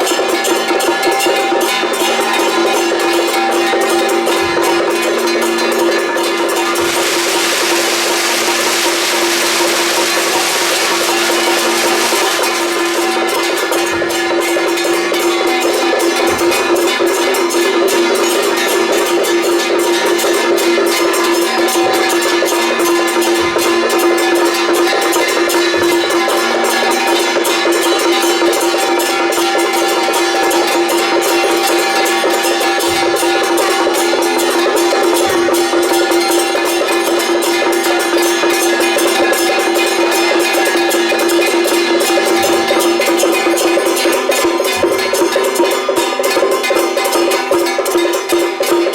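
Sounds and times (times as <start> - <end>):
drum and cymbal strikes: 0.0 - 18.3
fast percussion beats: 4.5 - 17.3.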